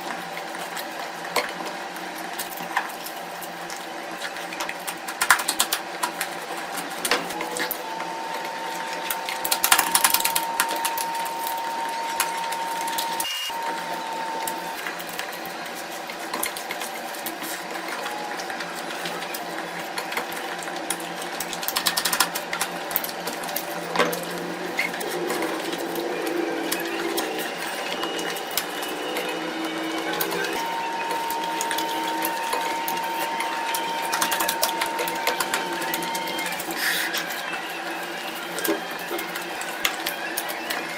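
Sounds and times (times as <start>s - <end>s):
steady high tone: 22.8s - 38.2s.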